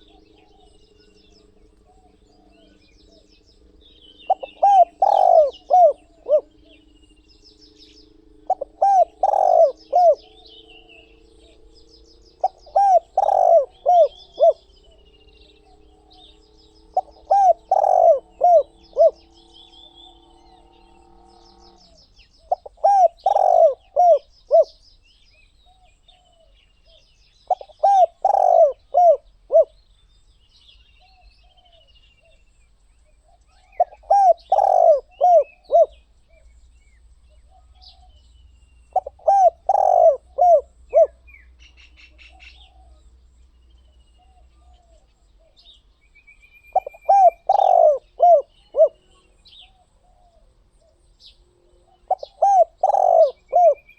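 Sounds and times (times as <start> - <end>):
low drone: 0.0 - 24.2
dove cooing: 0.0 - 24.8, 25.7 - 29.8, 33.2 - 36.5, 37.3 - 43.2, 46.7 - 53.9
small birds chirping: 0.0 - 53.9.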